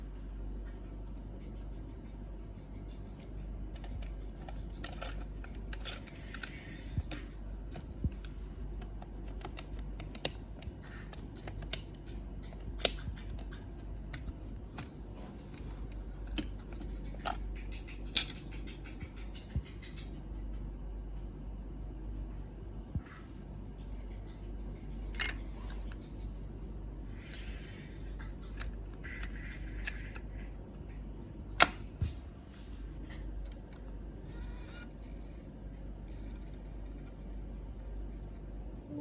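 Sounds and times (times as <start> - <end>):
low steady hum: 0.0 - 39.0
plastic parts clicking: 1.3 - 20.2.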